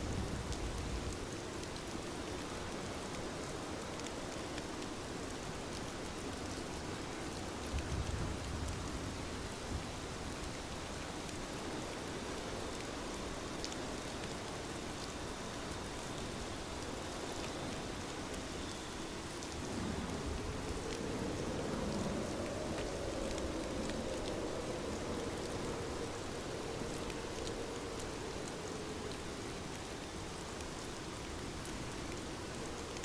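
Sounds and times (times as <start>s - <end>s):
steady rain: 0.0s - 33.0s
raindrops ticking: 18.3s - 33.0s.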